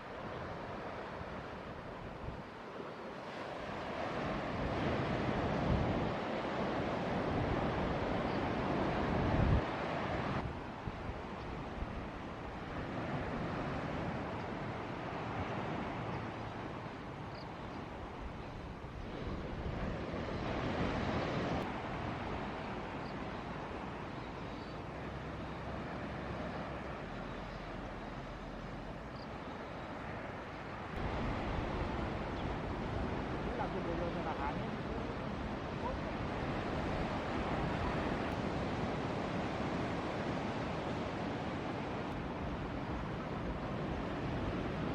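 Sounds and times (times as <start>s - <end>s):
waves breaking: 0.0s - 44.9s
wind buffeting microphone: 25.0s - 44.9s.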